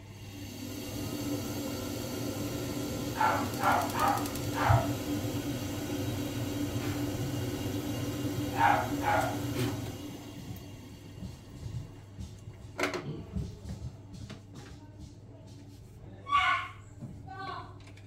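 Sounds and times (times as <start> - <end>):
dog barking: 3.2 - 5.0, 8.5 - 9.5.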